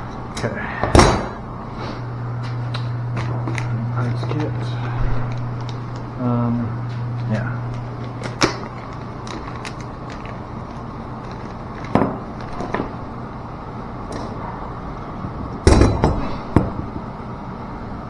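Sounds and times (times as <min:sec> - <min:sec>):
small parts clicking and knocking: 0:08.0 - 0:12.8.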